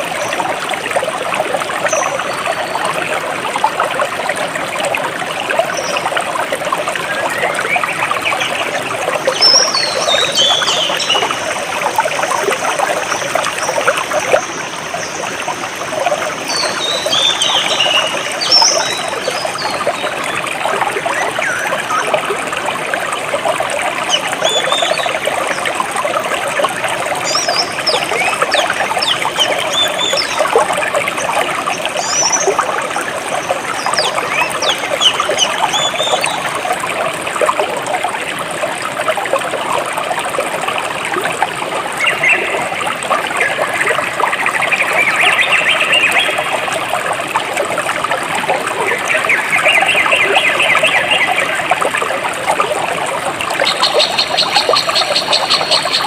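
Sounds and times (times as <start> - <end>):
stream trickling over rocks: 0.0 - 56.0
birds chirping: 33.7 - 36.4.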